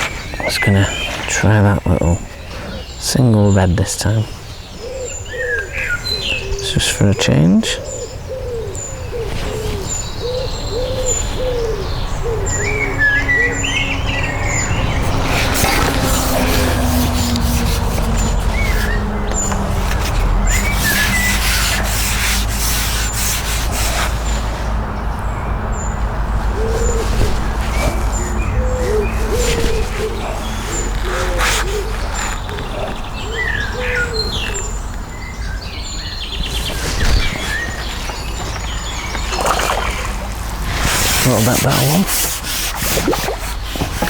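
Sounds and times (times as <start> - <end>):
birds calling and singing: 0.0 - 44.0
knocks and rustles: 36.4 - 44.0.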